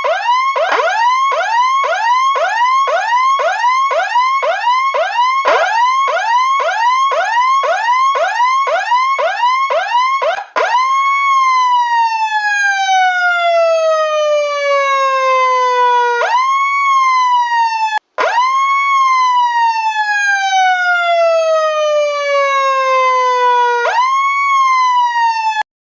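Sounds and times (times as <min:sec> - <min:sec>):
emergency vehicle siren: 0:00.0 - 0:25.7.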